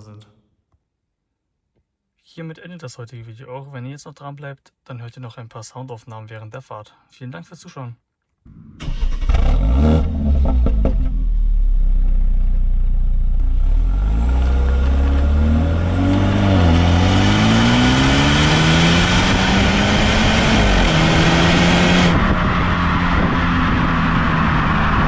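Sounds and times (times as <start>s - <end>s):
car engine accelerating: 8.5s - 25.0s
road and wind noise: 8.8s - 25.0s.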